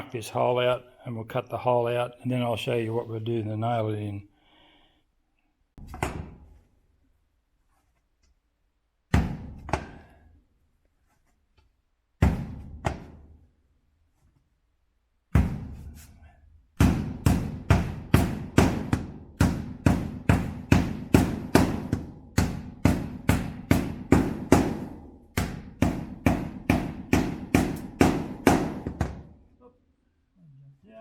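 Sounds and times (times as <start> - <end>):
hammer driving nails: 16.8 - 29.3.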